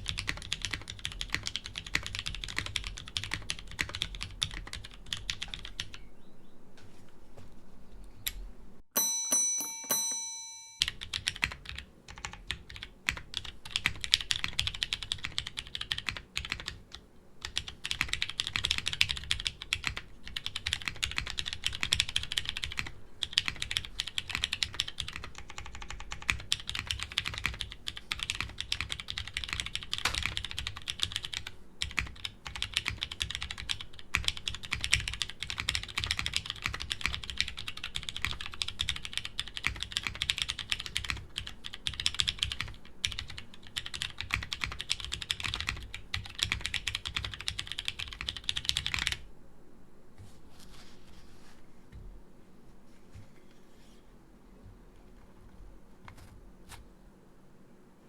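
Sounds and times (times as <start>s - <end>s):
mechanical keyboard clacking: 0.0s - 6.0s, 10.8s - 16.8s, 17.4s - 49.2s
brief chime: 9.0s - 10.8s.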